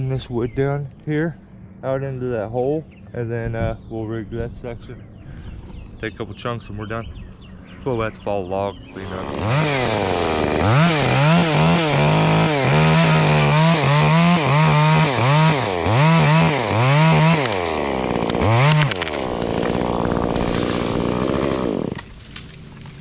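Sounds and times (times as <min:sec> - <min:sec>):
chainsaw revving while cutting wood: 0:09.0 - 0:23.0.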